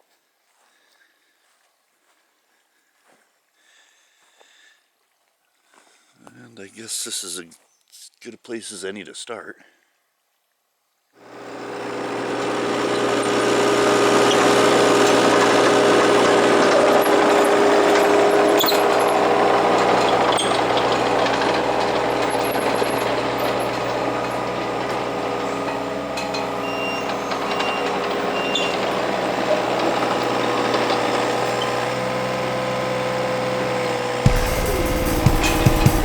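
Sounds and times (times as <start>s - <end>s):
excavator diesel engine running: 11.2s - 36.0s.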